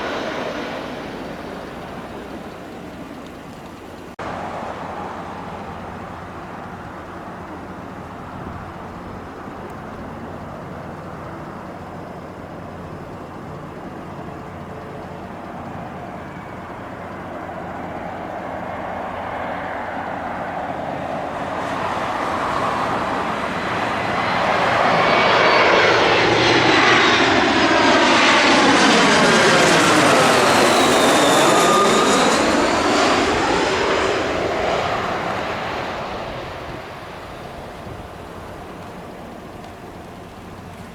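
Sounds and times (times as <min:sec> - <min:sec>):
airliner engines passing: 0:00.0 - 0:40.9.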